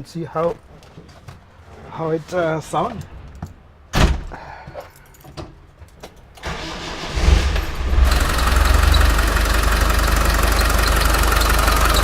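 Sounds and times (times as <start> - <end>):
squeaky engine bay noise: 6.2 - 12.0
starter motor cranking: 6.4 - 12.0
diesel engine idling: 7.9 - 12.0.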